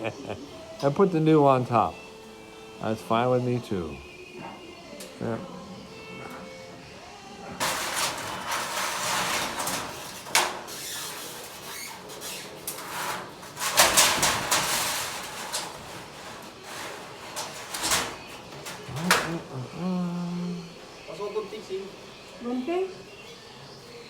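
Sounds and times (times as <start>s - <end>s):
roofing sheets scraping: 7.4s - 19.8s.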